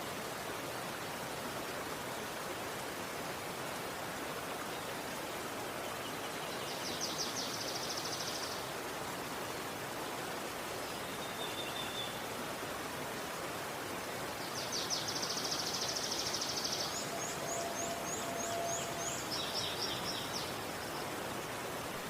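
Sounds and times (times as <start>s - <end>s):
river water rushing: 0.0s - 22.0s
songbird singing: 5.6s - 8.7s, 10.8s - 12.4s, 14.3s - 21.7s.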